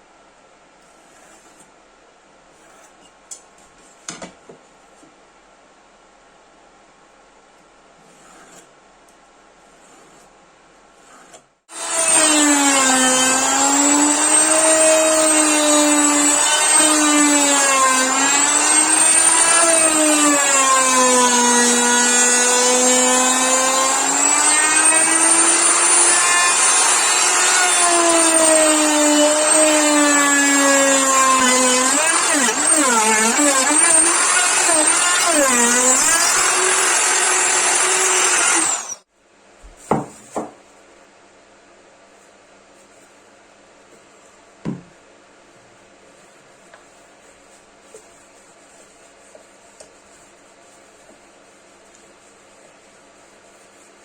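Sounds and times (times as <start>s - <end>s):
power tool motor whine: 11.7s - 39.0s.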